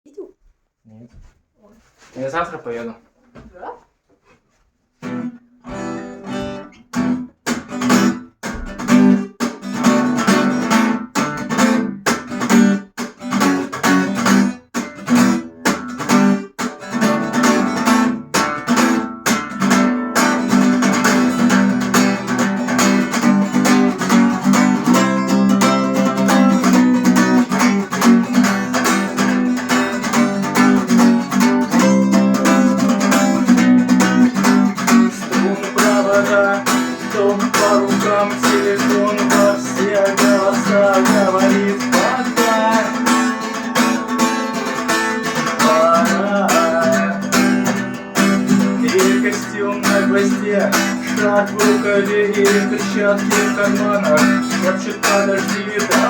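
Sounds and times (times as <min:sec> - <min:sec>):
acoustic guitar playing: 0:05.0 - 0:56.0.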